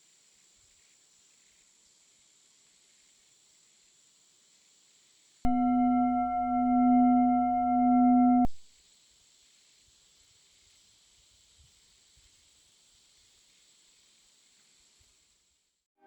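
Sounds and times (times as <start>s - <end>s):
ringing tone with overtones: 5.5s - 8.6s.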